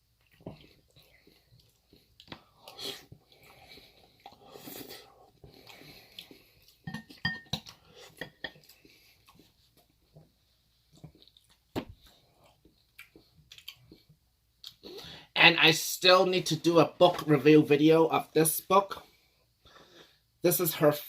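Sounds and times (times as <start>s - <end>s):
chewing food: 0.0s - 15.0s.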